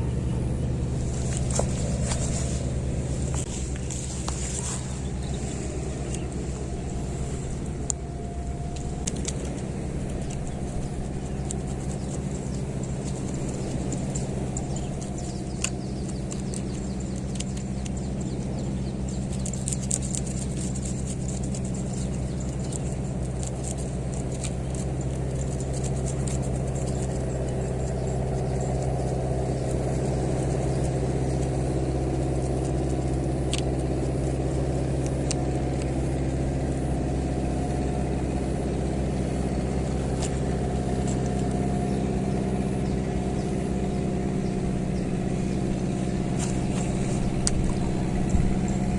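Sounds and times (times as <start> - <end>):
engine running: 0.0 - 48.9
sharp clicks and ticks: 7.6 - 36.1, 39.5 - 42.4.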